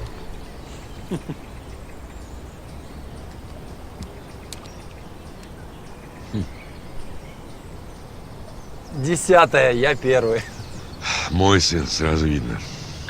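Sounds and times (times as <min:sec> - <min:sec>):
faint ticks: 0:00.0 - 0:09.3
low background noise: 0:00.0 - 0:13.0.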